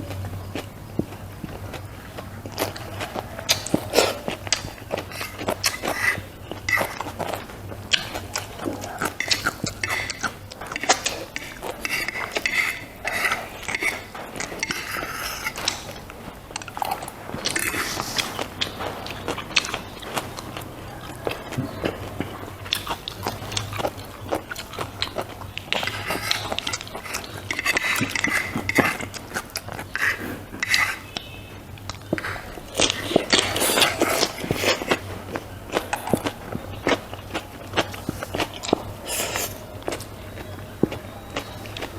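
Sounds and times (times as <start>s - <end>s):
chewing and wet mouth noises: 0.0s - 41.9s
steady low hum: 0.0s - 41.9s
utensil tapping a dish: 6.6s - 20.4s.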